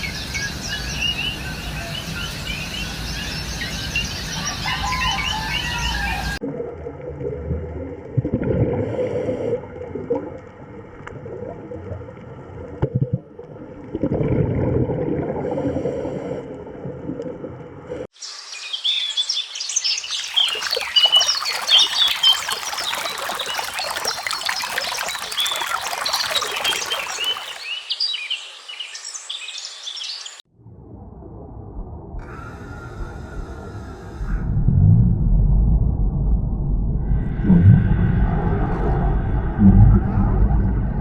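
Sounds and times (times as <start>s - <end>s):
many small birds chirping: 18.2s - 30.4s
water flowing and trickling: 19.8s - 27.8s.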